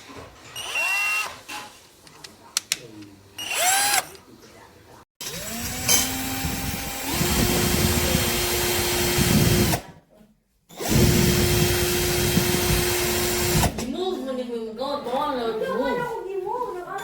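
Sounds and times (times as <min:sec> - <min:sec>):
cordless drill motor whining: 0:00.5 - 0:01.4, 0:03.4 - 0:04.2, 0:05.2 - 0:09.8, 0:10.8 - 0:13.8.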